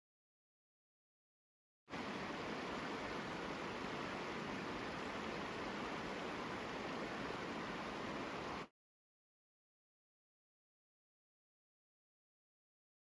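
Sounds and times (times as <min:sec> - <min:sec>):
flowing river water: 0:01.9 - 0:08.7.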